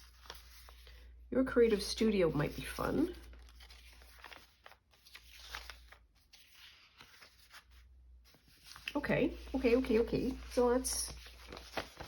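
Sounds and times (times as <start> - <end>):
paper rustling and light taps: 2.6 - 12.0.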